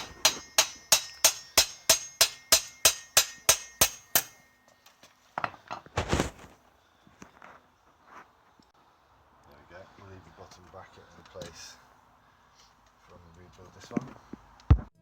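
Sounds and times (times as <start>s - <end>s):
hammer striking metal: 0.0s - 4.8s.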